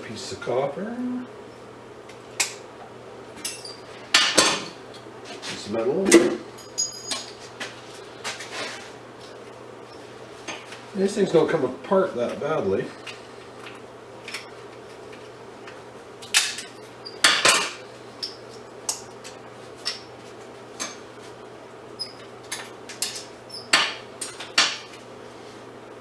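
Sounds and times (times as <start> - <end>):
metal parts clinking and clanking: 6.6 - 7.4.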